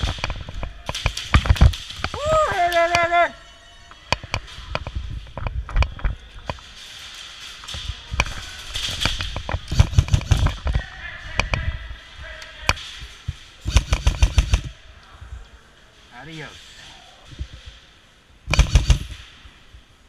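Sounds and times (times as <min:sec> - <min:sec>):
airsoft guns firing: 0:08.9 - 0:10.7, 0:13.6 - 0:14.8, 0:18.5 - 0:19.3.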